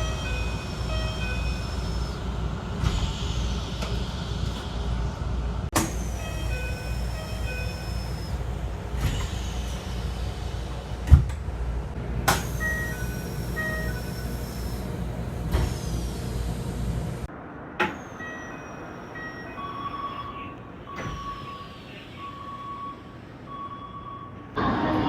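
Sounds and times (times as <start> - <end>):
low train hum: 0.0 - 25.0
electronic door chime: 18.0 - 23.0.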